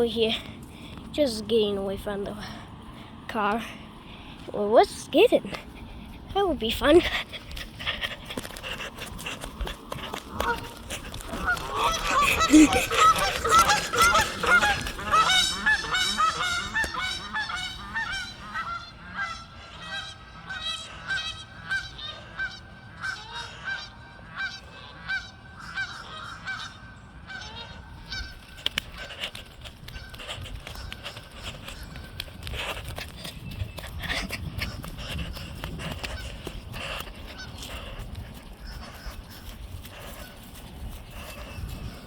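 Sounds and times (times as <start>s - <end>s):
geese honking in flight: 10.0s - 29.3s.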